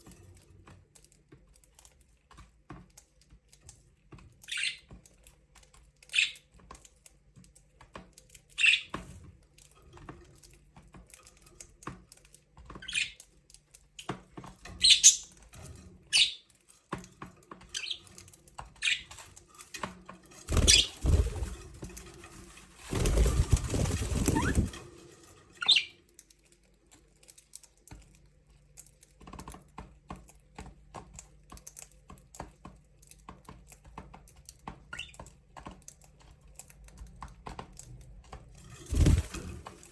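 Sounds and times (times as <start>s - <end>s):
small clicks and taps: 0.0s - 20.3s, 26.0s - 38.6s
budgerigars chirping: 8.6s - 8.9s, 14.8s - 15.3s, 16.2s - 16.4s
wings flapping: 20.3s - 25.9s, 38.6s - 39.9s.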